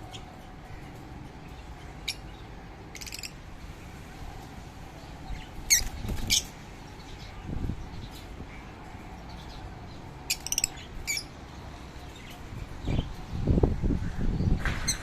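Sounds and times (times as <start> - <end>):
parrots calling and screeching: 1.6 - 3.4, 5.3 - 6.5, 10.3 - 11.4.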